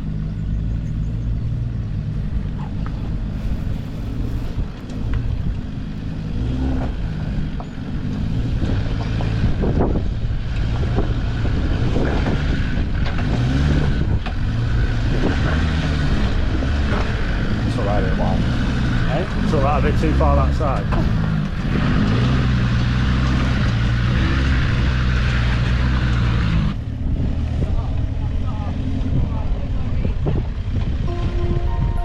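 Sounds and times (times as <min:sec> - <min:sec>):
off-road vehicle engine at low speed: 0:00.0 - 0:32.0
vehicle knocking over rough ground: 0:19.2 - 0:24.0.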